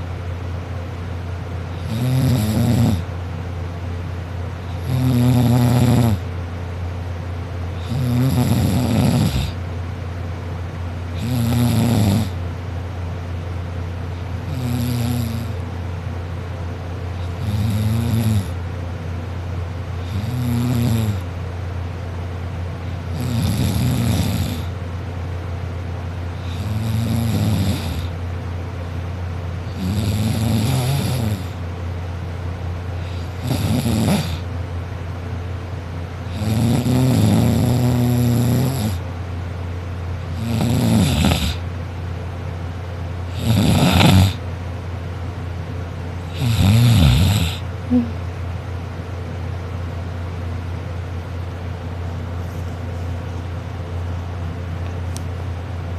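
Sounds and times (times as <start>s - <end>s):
steady low hum: 0.0s - 55.9s
person snoring loudly: 1.7s - 3.1s, 4.7s - 6.2s, 7.8s - 9.6s, 11.2s - 12.4s, 14.5s - 15.6s, 17.2s - 18.6s, 20.0s - 21.3s, 23.1s - 24.7s, 26.4s - 28.1s, 29.7s - 31.6s, 33.0s - 34.5s, 36.3s - 39.0s, 40.3s - 41.6s, 43.3s - 44.4s, 46.3s - 48.2s.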